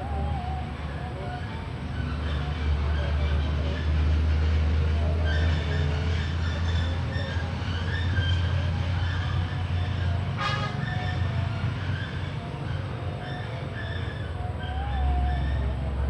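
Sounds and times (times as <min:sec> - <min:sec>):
train rumbling past: 0:00.0 - 0:16.0.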